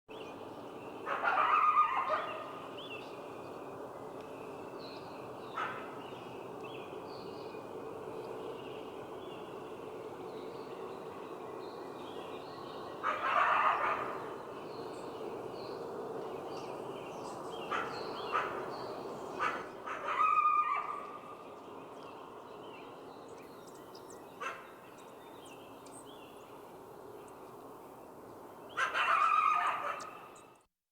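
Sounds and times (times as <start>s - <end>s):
steady low background noise: 0.1s - 30.7s
coyotes barking and yipping: 0.9s - 3.1s, 5.3s - 6.3s, 12.8s - 15.0s, 16.6s - 21.8s, 23.7s - 25.1s, 28.7s - 30.6s.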